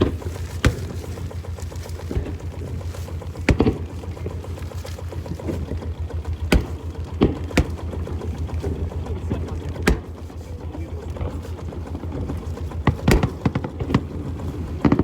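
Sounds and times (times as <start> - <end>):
boat engine rumbling: 0.0 - 15.0
sharp knocks: 3.4 - 4.0, 6.4 - 8.2.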